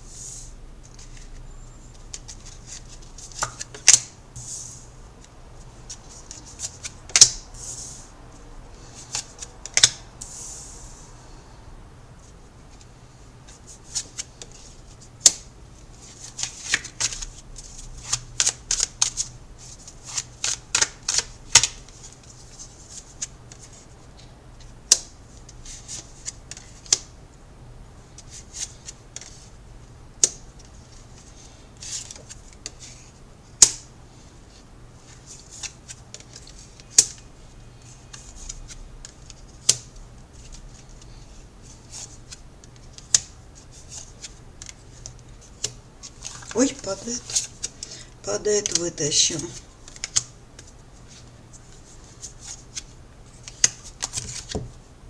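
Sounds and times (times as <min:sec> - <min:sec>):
cards being shuffled: 0:16.0 - 0:22.0, 0:43.8 - 0:54.7.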